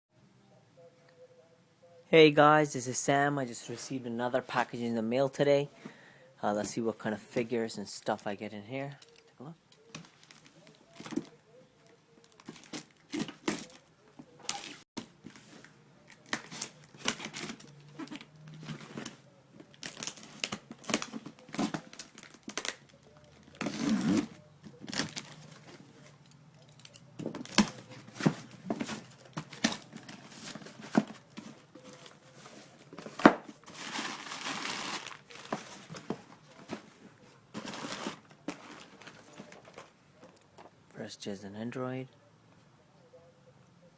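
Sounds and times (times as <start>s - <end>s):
packing material crinkling and tearing: 9.9s - 11.4s, 12.2s - 39.9s
clicks and knocks of items handled: 24.6s - 34.2s, 34.9s - 40.7s.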